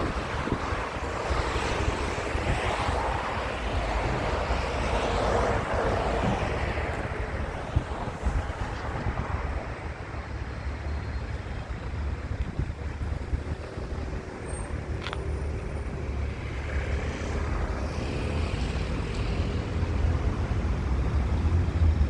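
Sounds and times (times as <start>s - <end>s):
broad rushing noise: 0.0s - 10.7s
wind rumbling on microphone: 0.0s - 22.0s.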